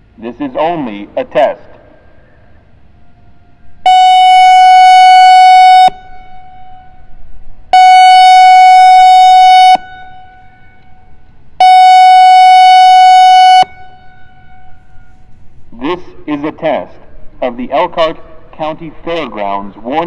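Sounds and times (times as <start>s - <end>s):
warning siren blasts: 2.0s - 15.6s.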